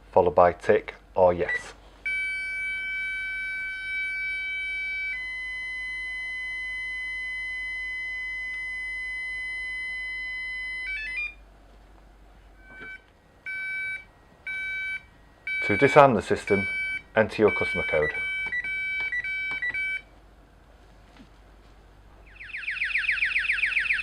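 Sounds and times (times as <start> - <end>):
alarm keypad electronic tone: 1.5 - 11.4, 12.6 - 20.1.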